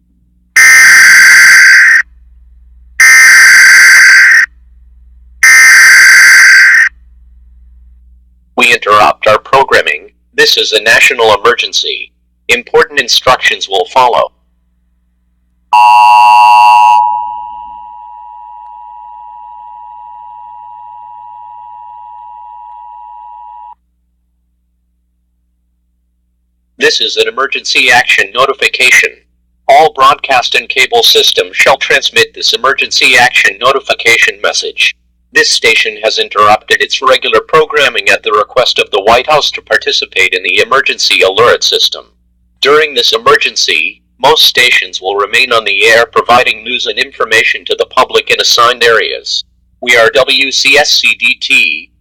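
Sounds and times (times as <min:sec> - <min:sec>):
two-pitch electronic alert tone: 0:15.8 - 0:23.8.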